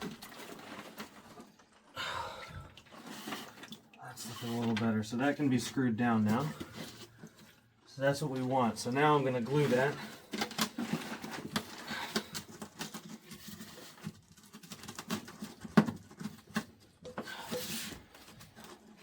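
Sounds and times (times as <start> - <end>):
plastic pipe fittings handled: 2.7 - 5.0, 6.2 - 7.6, 8.3 - 19.0.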